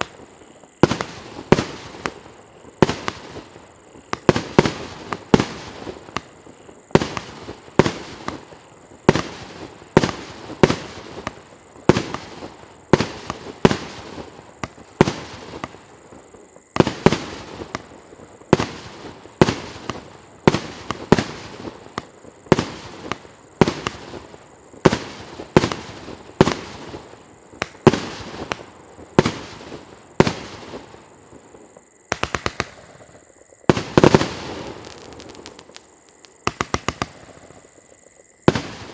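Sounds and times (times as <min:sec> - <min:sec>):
fireworks bangs with crackling tails: 0:00.0 - 0:38.9.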